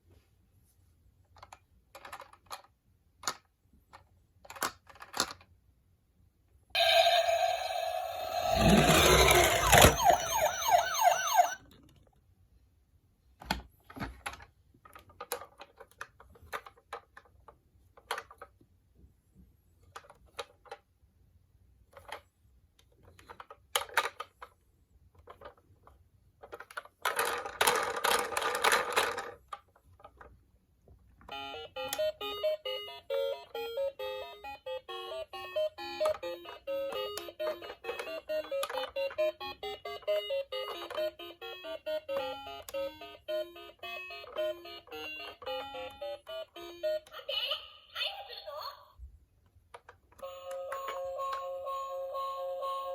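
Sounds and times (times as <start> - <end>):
plastic clicks and rattles: 1.3 - 5.6, 13.4 - 18.6, 21.9 - 24.6, 25.2 - 30.4
electronic toy sound: 6.8 - 11.6, 31.3 - 48.8, 50.2 - 52.9
toy siren warbling: 6.8 - 11.6
keyboard music tune: 50.2 - 52.9.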